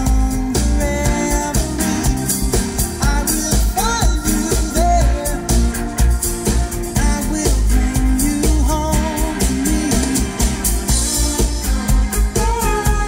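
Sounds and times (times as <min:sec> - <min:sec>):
song with singing and bass beat: 0:00.0 - 0:13.0.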